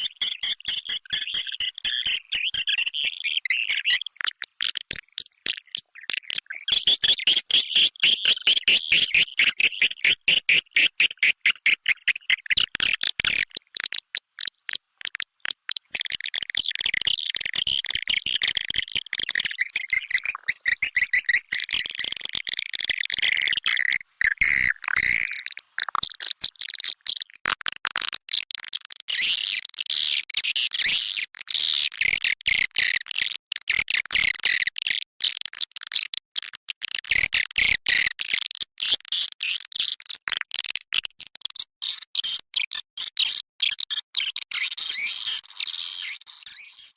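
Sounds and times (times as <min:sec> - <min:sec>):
swiftlet calls chattering: 0:06.7 - 0:12.5.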